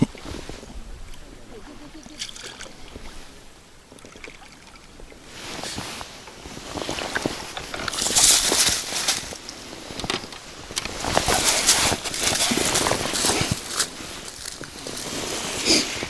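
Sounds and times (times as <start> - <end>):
water splashing: 1.9 - 5.0, 6.8 - 16.0
clicks and knocks: 9.9 - 11.5.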